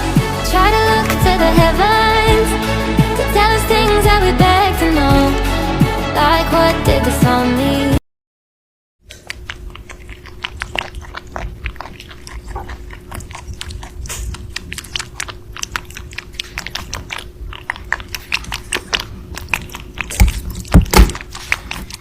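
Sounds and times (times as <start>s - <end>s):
animal chewing crunchy food: 9.0s - 22.0s.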